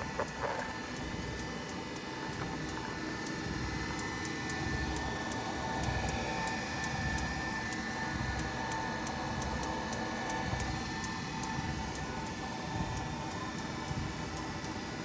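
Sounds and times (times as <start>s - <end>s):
treadmill clicking: 0.0s - 15.0s
treadmill motor hum and whine: 0.0s - 15.0s.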